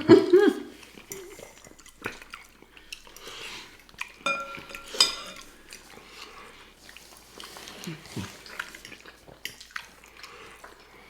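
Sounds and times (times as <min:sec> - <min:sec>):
person chewing: 0:00.8 - 0:04.2, 0:04.8 - 0:11.0
spoon clinking on dish: 0:04.2 - 0:05.5
spoon clicking against bowl: 0:04.3 - 0:05.4.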